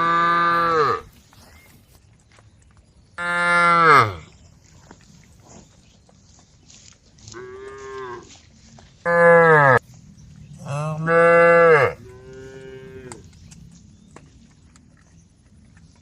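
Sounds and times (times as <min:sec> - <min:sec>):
cows mooing: 0:00.0 - 0:01.2, 0:03.2 - 0:04.3, 0:09.0 - 0:09.8, 0:10.5 - 0:13.3.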